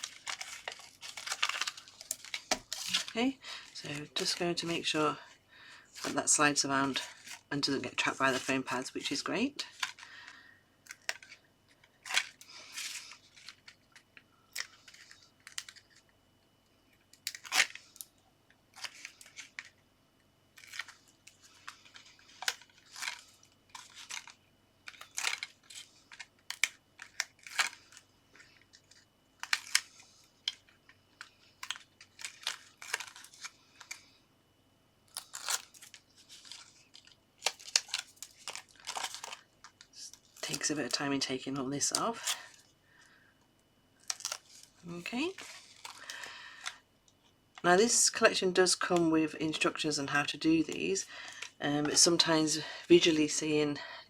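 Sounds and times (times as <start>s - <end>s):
paper crinkling and scratching: 0.0s - 10.0s, 18.7s - 19.7s, 20.6s - 34.0s, 35.1s - 42.6s, 44.0s - 46.3s.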